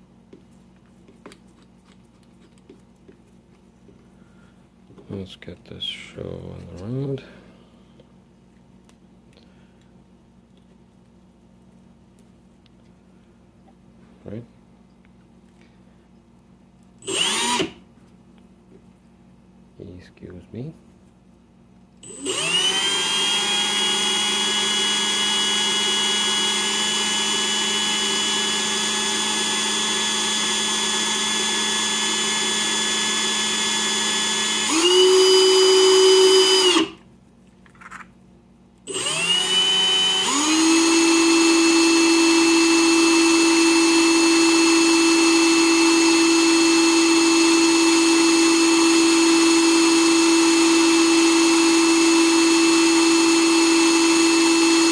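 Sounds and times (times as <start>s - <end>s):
small electric motor spinning: 17.1s - 17.7s, 22.1s - 37.0s, 38.9s - 54.9s.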